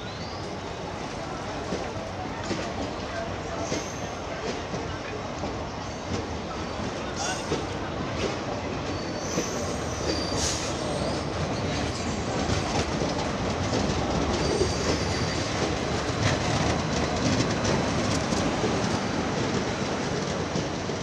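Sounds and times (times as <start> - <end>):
train wheels rumbling on track: 0.0 - 21.0
faint wheel squeals: 8.8 - 12.2.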